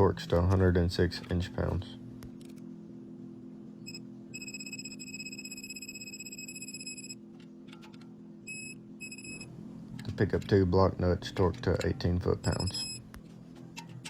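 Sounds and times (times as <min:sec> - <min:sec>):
steady low hum: 0:00.0 - 0:14.0
digital torque wrench beeping: 0:03.9 - 0:07.2, 0:08.5 - 0:09.5, 0:12.4 - 0:13.0.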